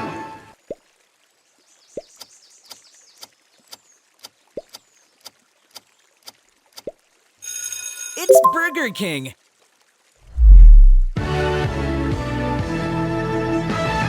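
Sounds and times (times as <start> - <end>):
rising plops: 10.4 - 11.2.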